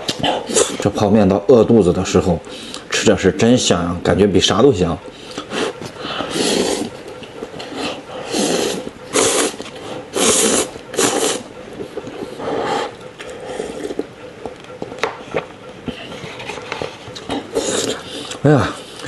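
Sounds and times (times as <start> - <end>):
eating sounds: 0.0 - 1.0, 5.1 - 19.0
noodles being slurped: 7.9 - 11.4.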